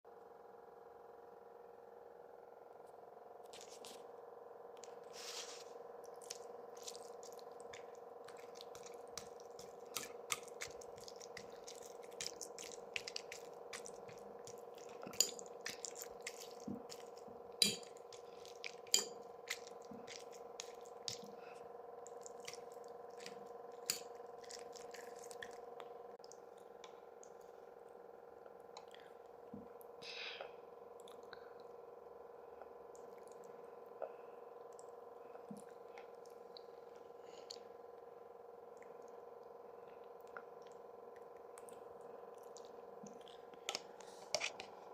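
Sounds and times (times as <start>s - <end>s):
steady background hum: 0.1s - 44.9s
mouth clicks and wet smacks eating: 22.0s - 26.6s, 39.9s - 44.7s.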